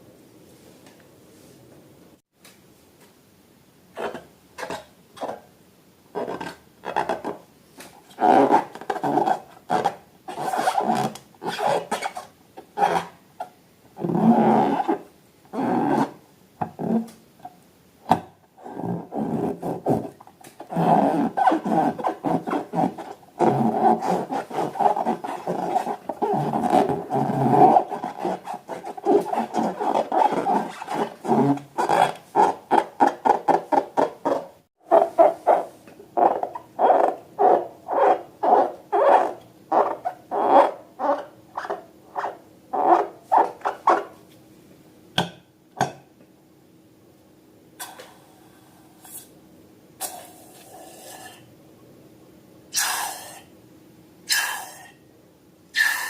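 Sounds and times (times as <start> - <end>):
balloons squeaking when rubbed: 8.1 - 13.2, 14.0 - 16.2, 18.6 - 44.1.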